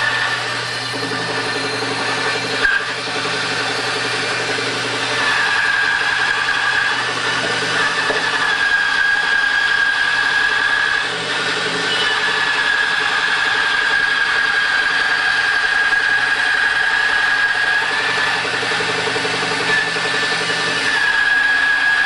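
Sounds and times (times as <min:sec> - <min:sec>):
band saw cutting wood: 0:00.0 - 0:22.0.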